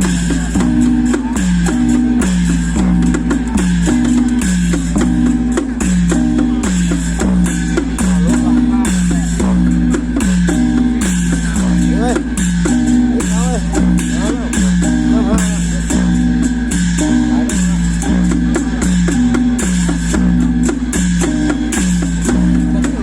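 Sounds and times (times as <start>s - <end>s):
deep bass: 0.0s - 23.0s
steady beat of sharp strikes: 0.0s - 23.0s.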